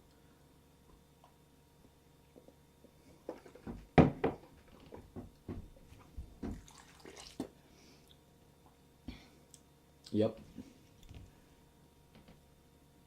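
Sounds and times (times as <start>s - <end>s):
water sloshing and splashing: 6.4s - 7.6s.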